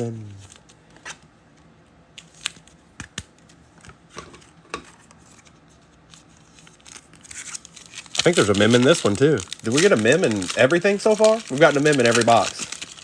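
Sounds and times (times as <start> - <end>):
cards and wrappers clicking: 6.1 - 13.0.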